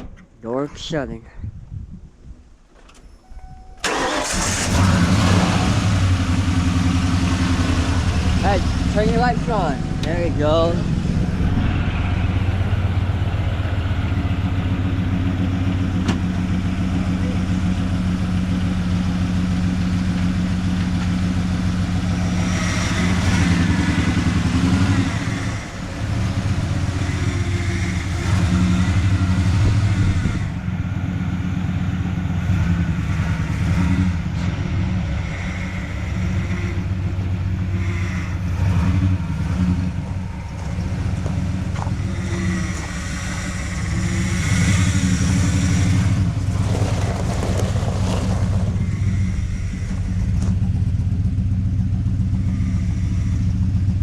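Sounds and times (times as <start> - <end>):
car engine running steadily: 3.8 - 54.0.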